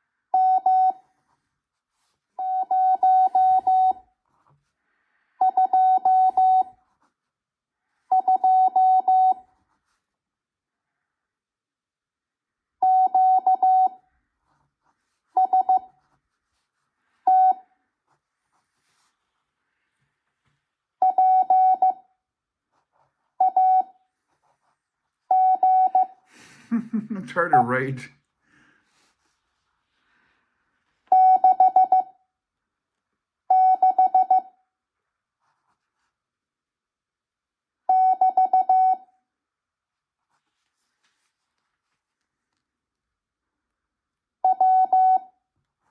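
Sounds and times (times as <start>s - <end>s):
morse code beeps: 0.4s - 1.0s, 2.4s - 4.0s, 5.4s - 6.7s, 8.1s - 9.4s, 12.8s - 14.0s, 15.4s - 15.9s, 17.3s - 17.6s, 21.0s - 22.0s, 23.4s - 24.0s, 25.3s - 26.2s, 31.1s - 32.1s, 33.5s - 34.5s, 37.9s - 39.0s, 44.4s - 45.3s.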